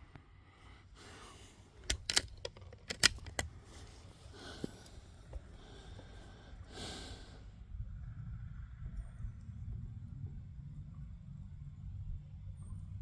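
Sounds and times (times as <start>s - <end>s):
rifle bolt clicking: 1.8s - 3.5s.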